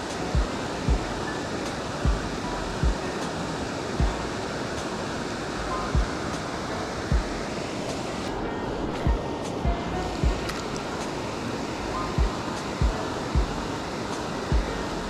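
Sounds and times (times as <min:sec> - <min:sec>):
waterfall rushing: 0:00.0 - 0:15.0
dull low thumps: 0:00.4 - 0:01.2, 0:02.0 - 0:03.0, 0:04.0 - 0:04.3, 0:05.9 - 0:06.2, 0:07.1 - 0:07.4, 0:08.9 - 0:10.6, 0:12.2 - 0:13.7, 0:14.5 - 0:14.8.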